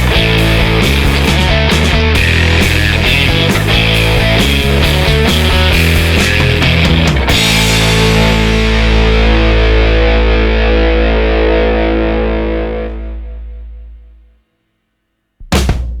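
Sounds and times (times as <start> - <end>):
distorted electric guitar rock: 0.0 - 14.3.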